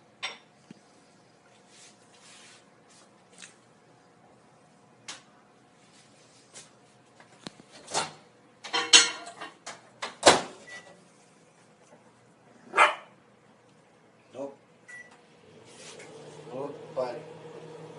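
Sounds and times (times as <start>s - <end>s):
puppy yapping: 12.7s - 13.2s.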